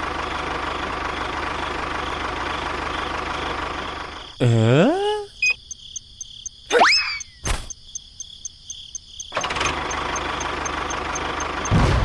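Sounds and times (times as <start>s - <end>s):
crickets chirping: 5.4s - 11.7s
click: 5.4s - 11.8s.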